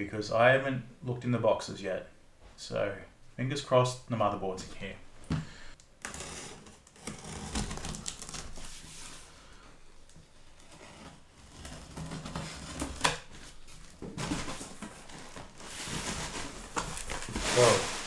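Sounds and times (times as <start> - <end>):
cardboard boxes rustling: 4.6 - 18.0.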